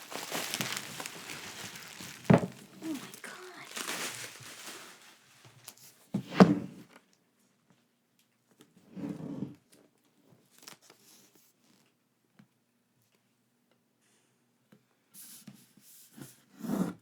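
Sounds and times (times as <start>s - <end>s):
packaging scraping rustle: 0.0s - 5.8s
box thump: 2.1s - 2.7s.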